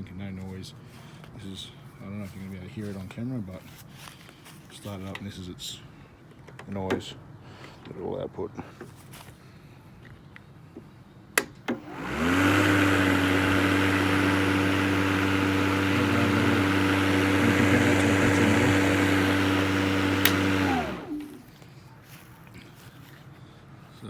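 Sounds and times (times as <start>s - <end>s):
lawnmower switch clicks: 11.4s - 15.9s, 16.6s - 21.4s
electric lawnmower whirring: 11.6s - 21.6s.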